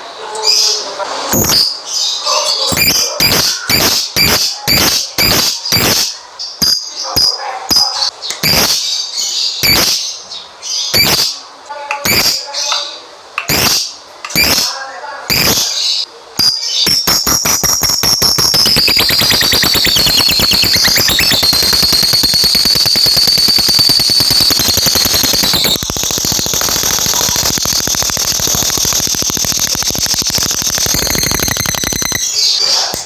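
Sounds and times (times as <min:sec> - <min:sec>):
bird rapid rattling trill: 0:02.7 - 0:06.9, 0:16.4 - 0:32.6.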